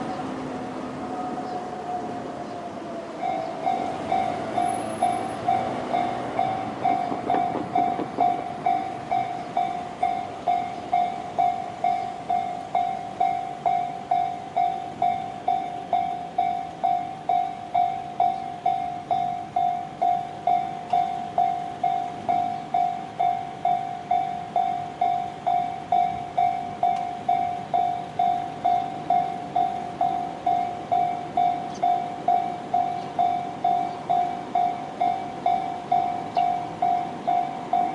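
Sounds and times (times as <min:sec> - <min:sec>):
electronic level crossing bell: 0:03.2 - 0:37.9.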